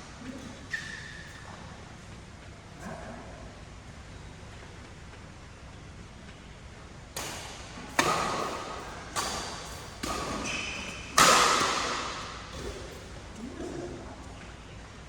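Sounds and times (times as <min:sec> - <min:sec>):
rackets hitting shuttlecock: 0:07.2 - 0:13.2.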